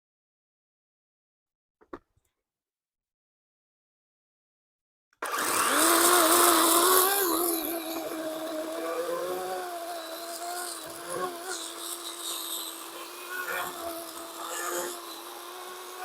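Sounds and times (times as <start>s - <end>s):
electric chainsaw whining: 5.2s - 16.0s.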